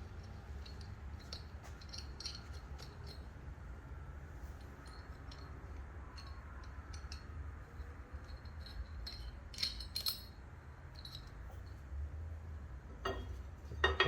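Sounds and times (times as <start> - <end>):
metal nuts clinking on bolts: 0.2 - 3.3, 8.2 - 11.4, 13.0 - 14.0.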